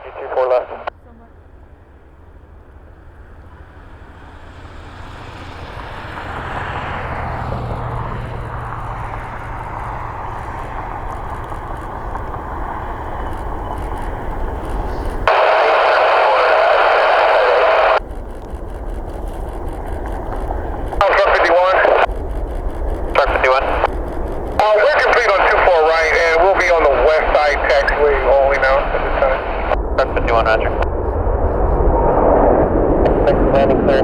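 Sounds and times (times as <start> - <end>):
radio static with tone: 0.0 - 1.2, 8.2 - 34.0
jet engines roaring: 0.0 - 34.0.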